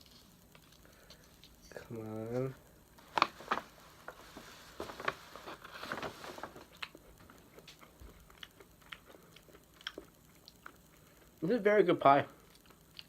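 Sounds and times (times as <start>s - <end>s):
faint eating clicks: 6.7s - 13.0s.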